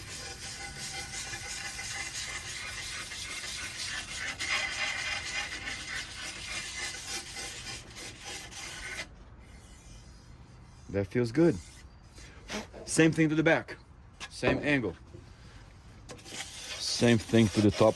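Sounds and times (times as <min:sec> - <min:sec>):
sandpaper rubbing on wood: 0:00.0 - 0:11.8, 0:16.2 - 0:17.9.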